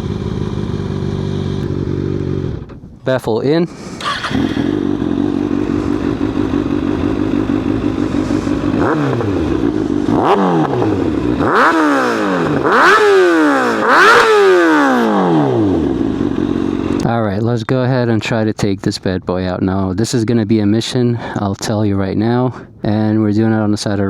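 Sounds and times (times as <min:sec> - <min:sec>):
motorcycle engine idling and revving: 0:00.0 - 0:03.0, 0:03.6 - 0:17.1.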